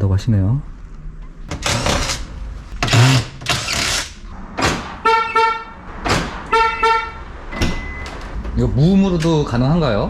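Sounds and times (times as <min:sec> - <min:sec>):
car horn toots: 0:05.0 - 0:05.8, 0:06.5 - 0:07.2.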